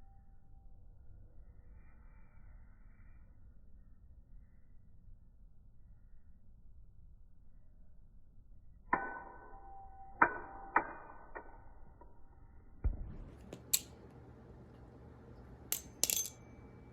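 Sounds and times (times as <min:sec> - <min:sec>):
butterfly knife handles clacking: 0:13.5 - 0:14.0, 0:15.7 - 0:16.5.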